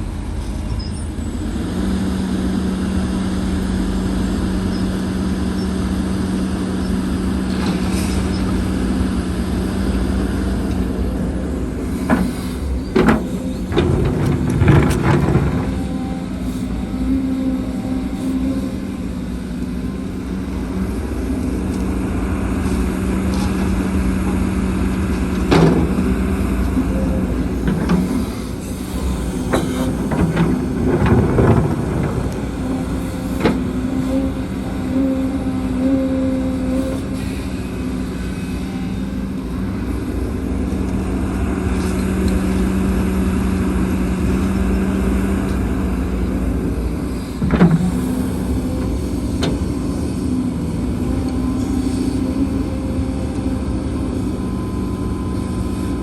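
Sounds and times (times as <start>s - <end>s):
diesel machinery running: 0.0s - 56.0s
metallic clanks and knocks: 11.8s - 19.1s, 25.4s - 35.0s, 47.4s - 49.8s.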